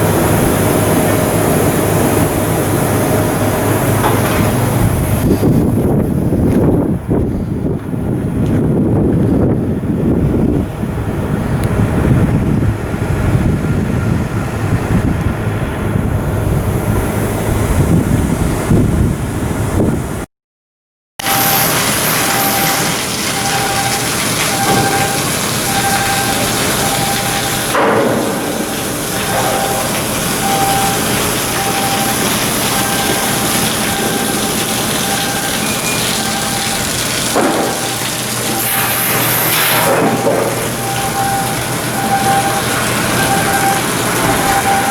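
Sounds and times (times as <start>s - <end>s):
steady machinery noise: 0.0s - 7.1s, 21.2s - 44.9s
wind buffeting microphone: 0.0s - 20.3s.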